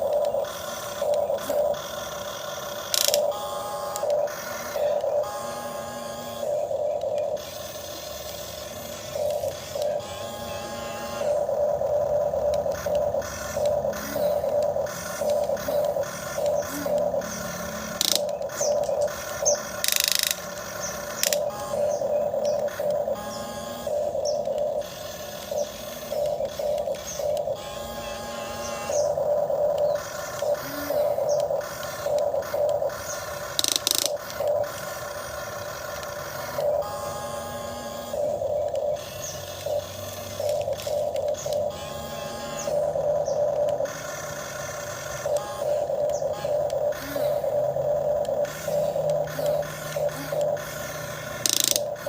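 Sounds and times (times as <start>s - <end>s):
small electric motor whining: 0.0s - 52.0s.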